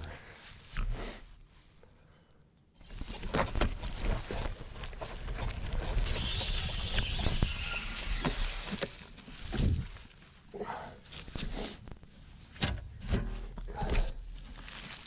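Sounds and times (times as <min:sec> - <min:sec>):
bicycle rattling over bumps: 0:03.0 - 0:10.2.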